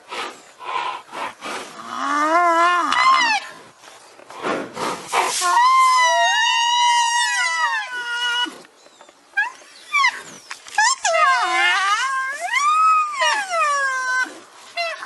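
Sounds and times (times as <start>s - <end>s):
rhinoceros breathy huff: 0.0s - 1.8s, 3.9s - 5.4s
rhinoceros squealing calls: 9.4s - 15.0s.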